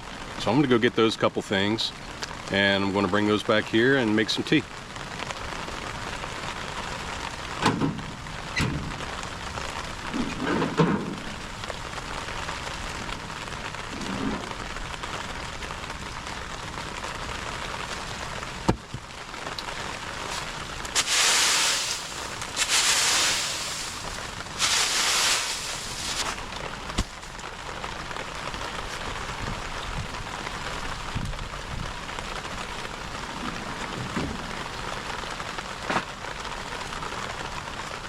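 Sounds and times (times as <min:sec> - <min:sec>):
steady rain falling: 0:00.0 - 0:38.0
knocks and thuds: 0:07.6 - 0:09.1, 0:10.1 - 0:11.3, 0:18.6 - 0:19.1, 0:33.3 - 0:34.8
loud hissing rushes: 0:20.2 - 0:27.1.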